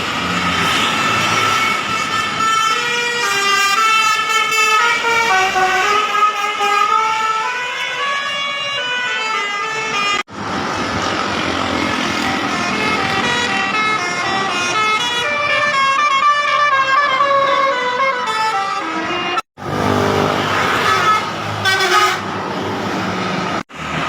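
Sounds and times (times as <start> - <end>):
traffic noise: 0.0 - 24.0
bus musical horn tune: 1.4 - 10.3, 12.0 - 22.4.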